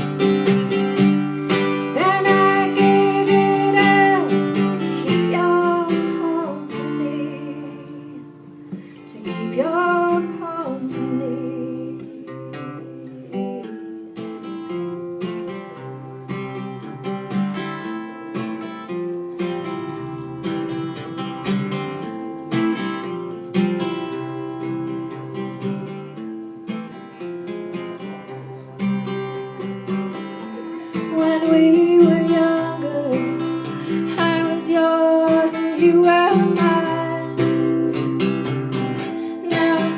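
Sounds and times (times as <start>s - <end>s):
acoustic guitar strumming: 0.0s - 39.9s
person singing: 1.6s - 14.3s, 28.1s - 39.9s.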